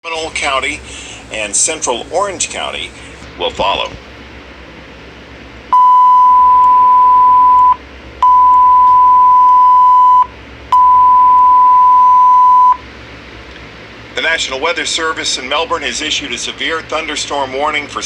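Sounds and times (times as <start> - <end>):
long steady alert beeps: 5.7 - 12.8.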